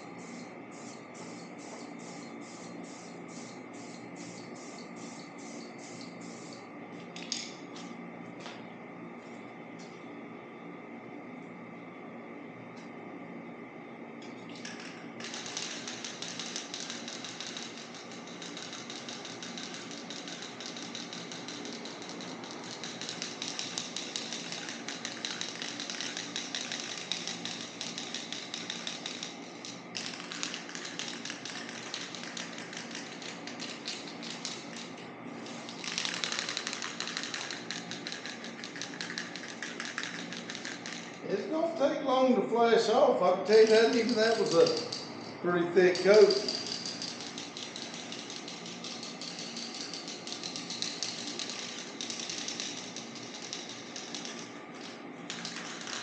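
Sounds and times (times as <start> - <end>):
paint spray hissing: 0.0 - 6.6.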